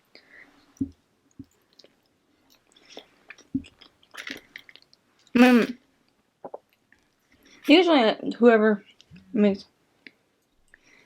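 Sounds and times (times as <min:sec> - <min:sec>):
wet chewing: 0:01.4 - 0:05.0
mouth clicks and smacks: 0:06.4 - 0:07.1.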